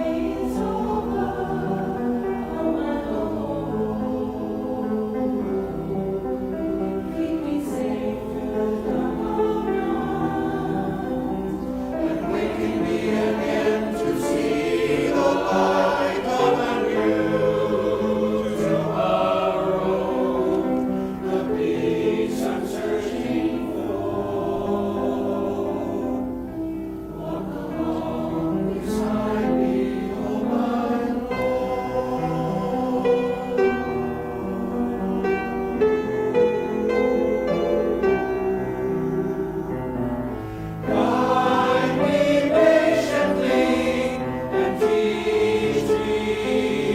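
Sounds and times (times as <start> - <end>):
church choir singing a hymn: 0.0 - 46.9.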